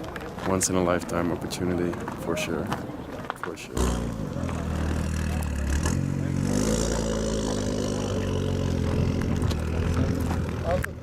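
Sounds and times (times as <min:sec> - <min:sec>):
car engine running: 0:04.0 - 0:11.0.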